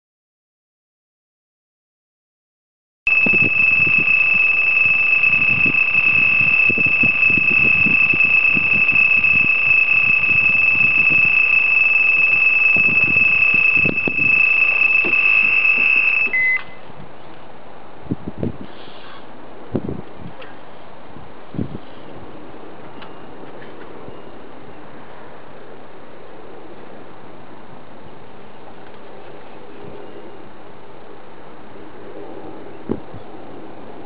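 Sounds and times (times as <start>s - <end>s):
electronic bite alarm tone: 3.1s - 16.8s.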